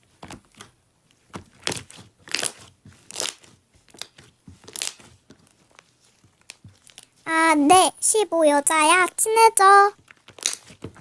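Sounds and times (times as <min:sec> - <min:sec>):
slime crackling when squeezed: 0:01.6 - 0:05.1, 0:10.1 - 0:10.8.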